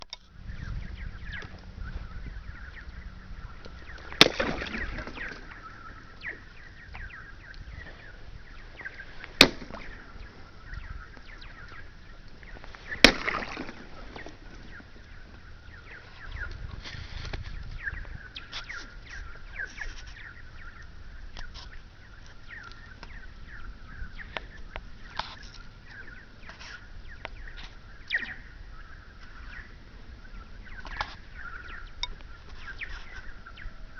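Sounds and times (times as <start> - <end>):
ice chirping: 3.9 - 6.4, 12.5 - 14.7
stick striking ice with twang: 4.2 - 5.1, 9.4 - 9.8, 13.0 - 13.7.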